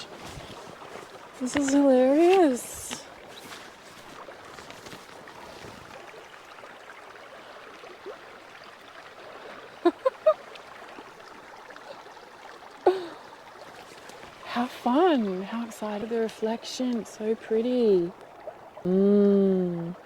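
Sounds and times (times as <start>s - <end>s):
river rushing: 0.0s - 6.2s.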